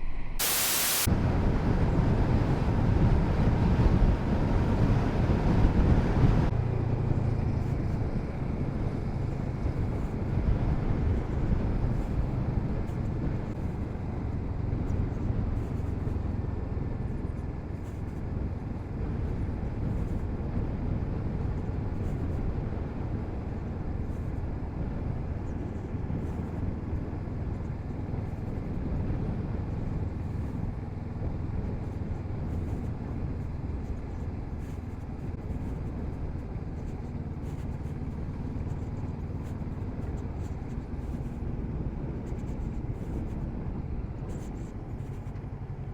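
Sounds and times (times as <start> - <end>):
wind and road noise: 0.0 - 45.9
motorcycle engine running: 25.1 - 45.9.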